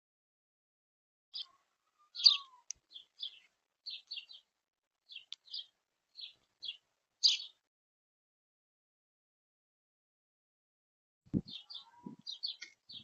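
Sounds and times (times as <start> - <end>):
small bird chirping: 1.4 - 7.6, 11.4 - 13.0.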